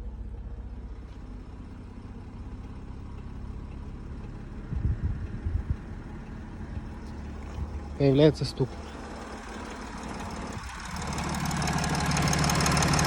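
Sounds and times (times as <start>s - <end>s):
car engine idling: 0.0s - 13.0s
low engine knocks: 2.6s - 11.5s.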